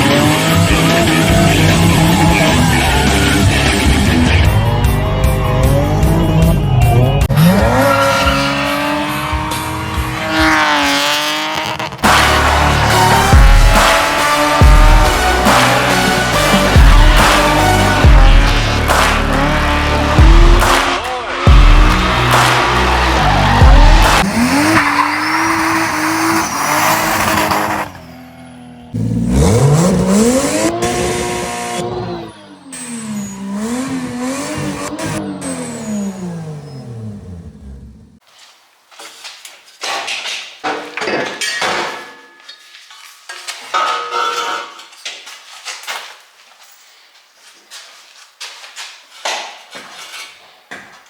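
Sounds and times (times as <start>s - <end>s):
car engine revving high: 0.0s - 37.8s
tyres squealing: 7.3s - 14.4s, 20.9s - 28.6s
metal tools clanking: 40.6s - 45.1s.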